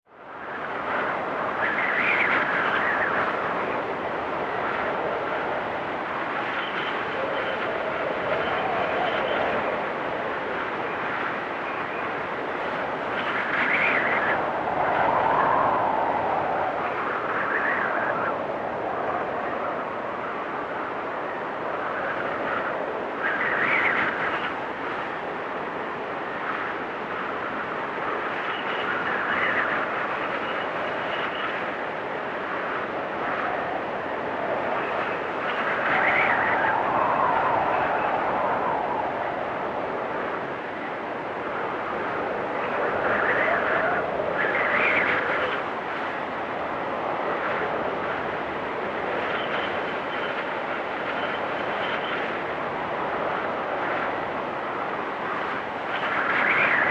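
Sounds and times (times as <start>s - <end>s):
strong wind blowing in gusts: 0.0s - 56.9s.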